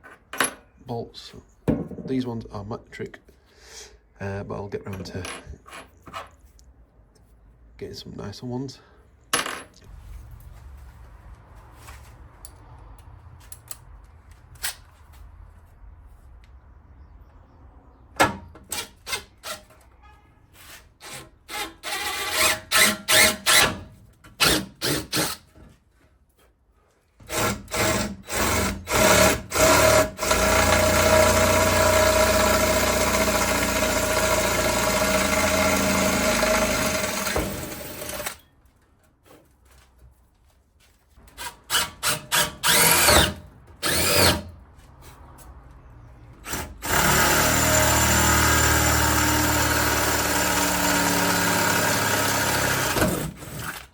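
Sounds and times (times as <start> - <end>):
power drill drilling: 21.5 - 23.7, 27.3 - 38.4, 41.4 - 44.4, 46.4 - 53.9.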